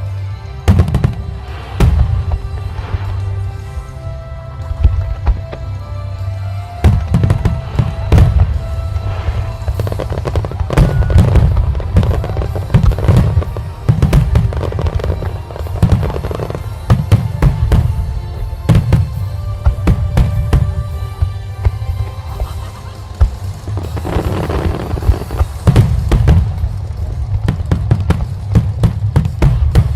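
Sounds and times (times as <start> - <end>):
music playing: 0.0 - 29.9
fireworks bangs: 6.8 - 29.9.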